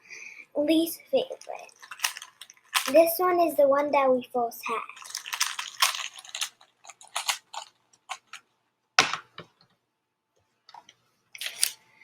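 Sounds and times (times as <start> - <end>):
plastic puzzle cube clicking: 1.7 - 3.0, 5.0 - 8.4.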